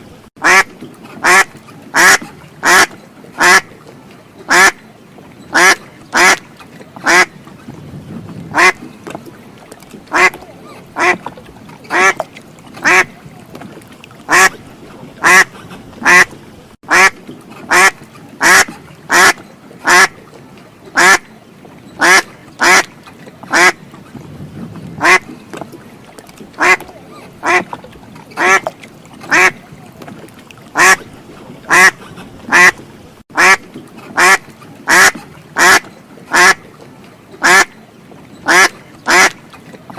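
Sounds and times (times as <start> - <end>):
duck quacking: 0.4 - 3.7, 4.5 - 4.8, 5.5 - 6.4, 7.0 - 7.3, 8.5 - 8.8, 10.1 - 10.4, 11.0 - 11.2, 11.9 - 12.2, 12.8 - 13.2, 14.3 - 14.6, 15.2 - 16.3, 16.9 - 20.1, 21.0 - 21.2, 22.0 - 22.9, 23.5 - 23.8, 25.0 - 25.2, 26.6 - 26.8, 27.4 - 27.6, 28.4 - 28.7, 29.3 - 29.6, 30.8 - 31.0, 31.7 - 32.8, 33.4 - 33.6, 34.2 - 36.6, 37.4 - 37.7, 38.5 - 39.4.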